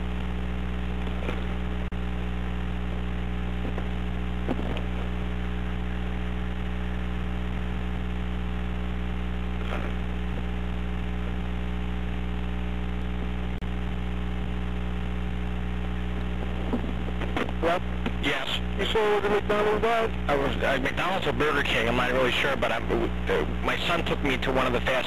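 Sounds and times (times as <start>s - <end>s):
electrical mains hum: 0.0s - 25.0s.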